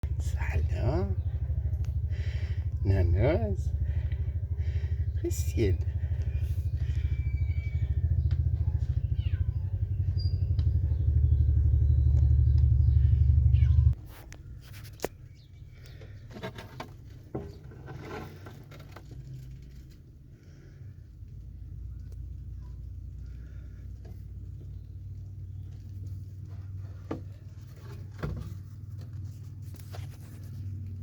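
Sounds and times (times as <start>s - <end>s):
faint clicks and rustles: 13.6s - 31.0s.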